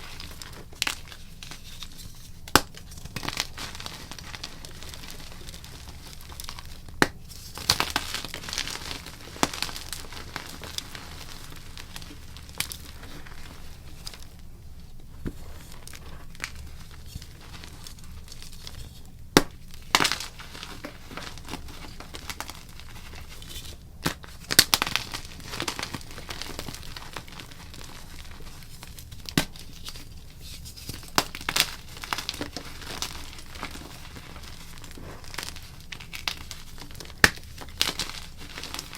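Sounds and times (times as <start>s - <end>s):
chalk crumbling crackle: 0.0s - 38.9s
chalk pieces snapping: 0.1s - 14.3s, 15.2s - 30.1s.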